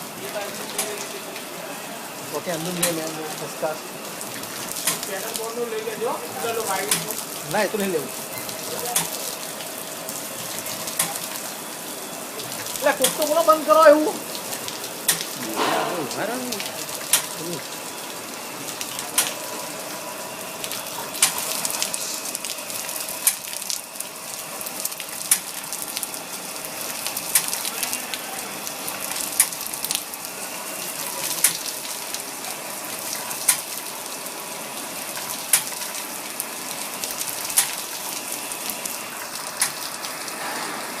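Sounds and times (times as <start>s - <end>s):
spraying water hiss: 2.2s - 19.8s, 20.6s - 25.9s.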